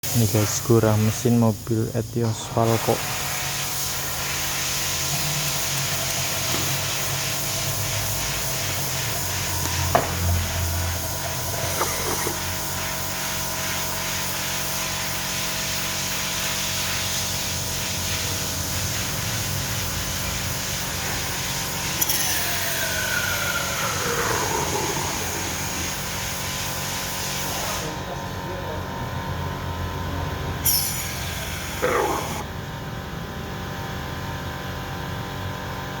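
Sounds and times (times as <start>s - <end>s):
steady hiss: 0.0s - 28.2s.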